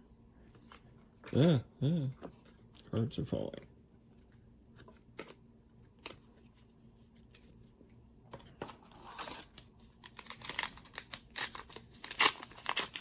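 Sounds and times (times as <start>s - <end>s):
soft rustling of cards: 2.2s - 11.1s.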